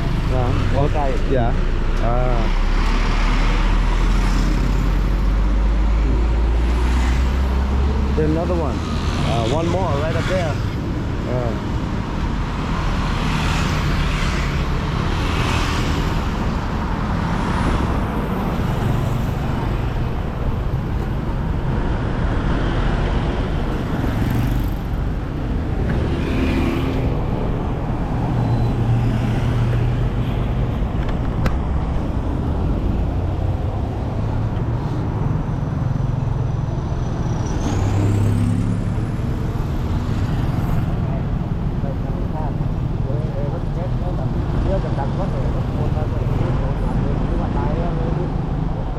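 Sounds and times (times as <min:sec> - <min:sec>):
motor vehicles passing: 0:00.0 - 0:48.9
road noise: 0:00.0 - 0:48.9.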